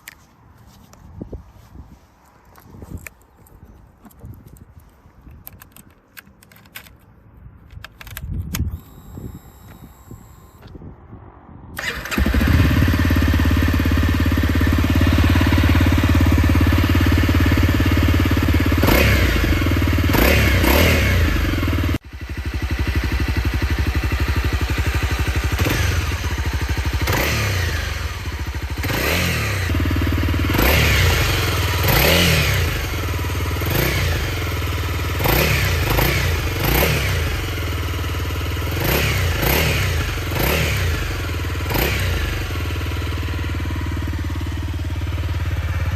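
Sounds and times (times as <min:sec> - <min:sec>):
motorcycle engine revving: 0:11.8 - 0:45.9.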